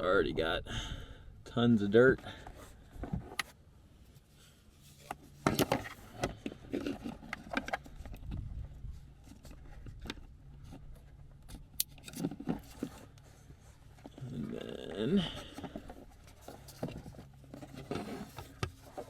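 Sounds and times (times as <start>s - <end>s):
scraping and rubbing: 15.4s - 19.0s.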